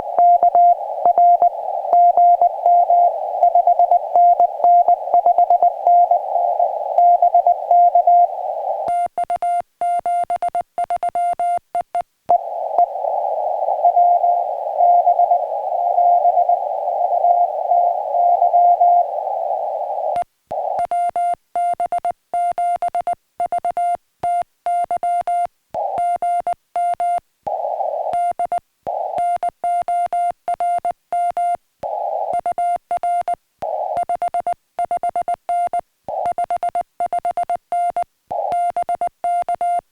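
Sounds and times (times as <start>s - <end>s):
morse code tone: 0.0s - 11.6s, 20.6s - 39.8s
receiver hiss: 0.0s - 39.9s.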